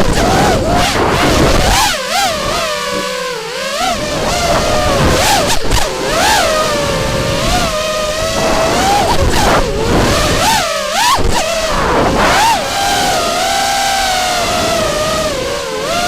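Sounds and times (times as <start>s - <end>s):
drone motors whining: 0.0s - 16.0s
rush of air: 11.2s - 12.7s.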